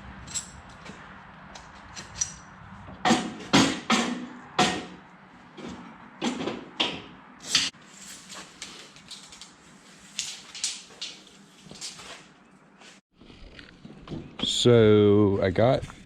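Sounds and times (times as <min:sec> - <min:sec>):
steel pieces knocking and clanking: 0:01.9 - 0:05.0, 0:10.2 - 0:12.0.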